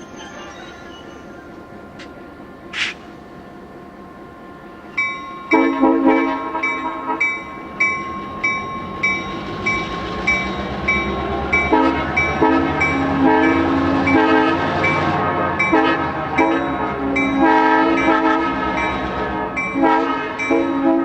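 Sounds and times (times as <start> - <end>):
locomotive air horn blasts: 5.5 - 7.4, 11.7 - 21.0.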